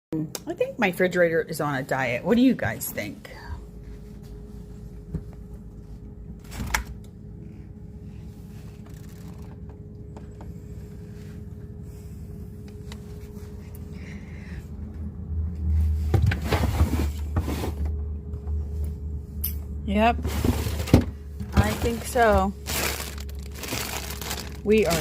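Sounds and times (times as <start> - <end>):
steady low hum: 0.2 - 25.0
low rumble: 1.9 - 25.0
refrigerator door opening: 6.4 - 7.0.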